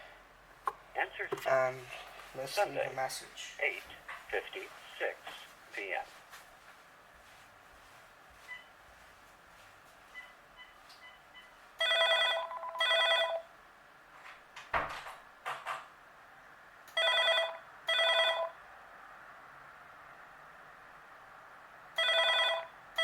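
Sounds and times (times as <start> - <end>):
electronic telephone ringing: 11.8 - 13.5, 17.0 - 18.6, 22.0 - 23.0.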